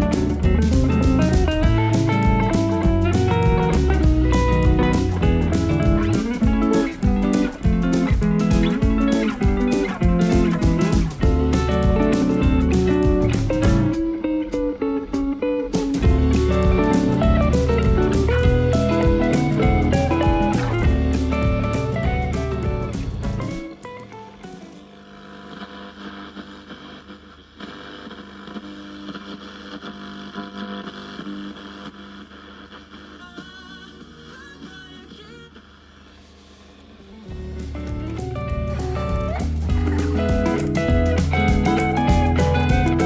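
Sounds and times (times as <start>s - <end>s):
bass line: 0.0s - 14.0s, 16.0s - 23.7s, 37.3s - 43.0s
steady beat: 0.0s - 24.7s, 37.3s - 43.0s
guitar: 0.0s - 25.7s, 37.0s - 43.0s
speaker hiss: 0.0s - 29.9s, 31.2s - 43.0s
electrical hum: 0.0s - 43.0s.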